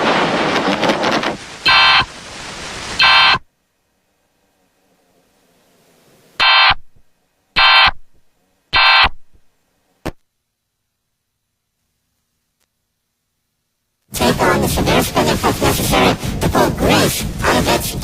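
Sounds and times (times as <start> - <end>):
buzzy digital data screeches: 1.6 - 2.1, 3.0 - 3.4.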